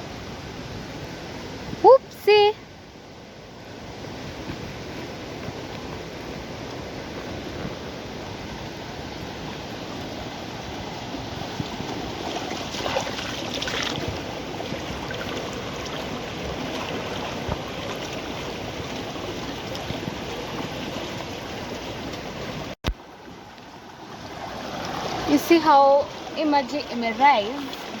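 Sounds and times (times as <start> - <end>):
river rushing: 0.0 - 28.0
water splashing surge: 11.7 - 21.0.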